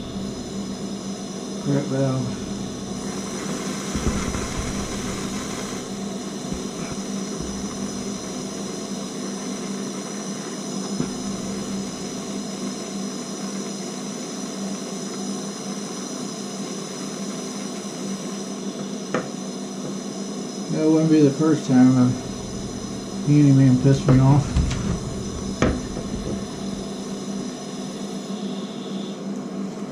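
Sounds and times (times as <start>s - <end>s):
heating tool hum and hiss: 0.0s - 29.9s
faint knocks: 6.5s - 8.1s.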